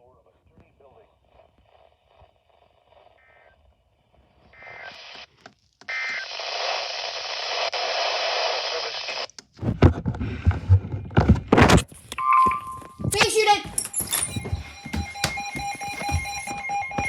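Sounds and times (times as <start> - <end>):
radio static hiss: 0.0 - 9.4
knocks and thumps: 9.6 - 17.0.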